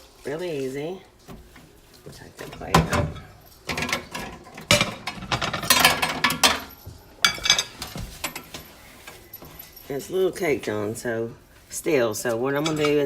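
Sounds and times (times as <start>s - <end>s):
glass plate clinking: 2.8s - 8.6s.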